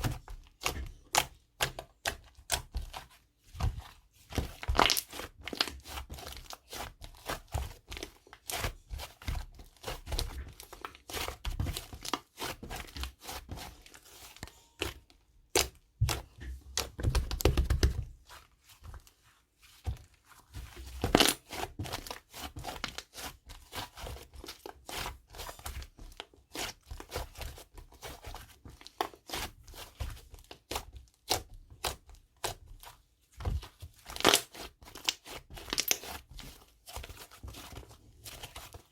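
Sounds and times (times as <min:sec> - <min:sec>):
slime squelching and popping: 0:03.6 - 0:13.5, 0:20.6 - 0:25.9, 0:33.5 - 0:36.4.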